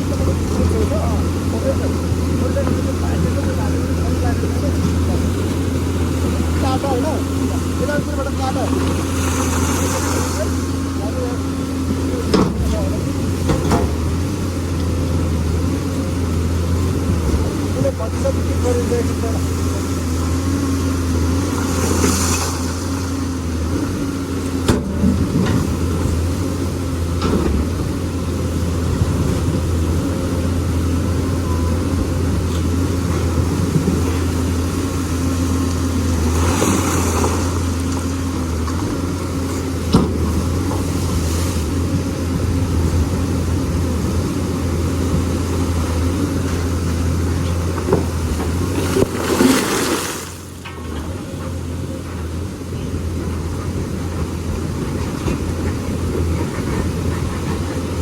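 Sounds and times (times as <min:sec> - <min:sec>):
excavator diesel engine running: 0:00.0 - 0:58.0.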